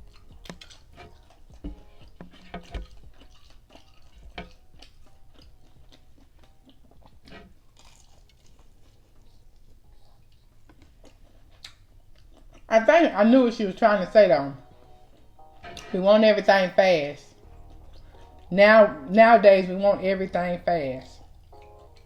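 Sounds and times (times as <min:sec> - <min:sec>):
small crunches: 0:00.0 - 0:12.7
chewing food: 0:00.0 - 0:16.5, 0:17.1 - 0:22.0.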